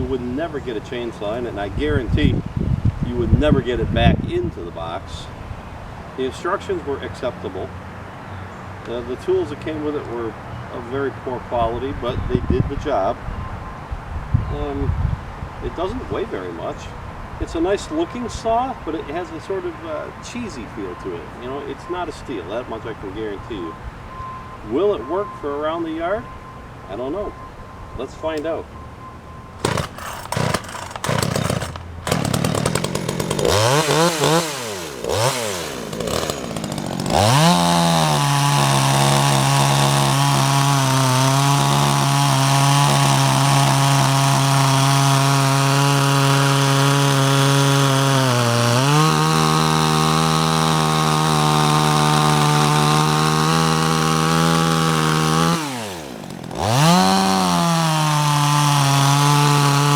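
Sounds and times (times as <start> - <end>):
chainsaw revving and cutting wood: 29.6 - 59.9.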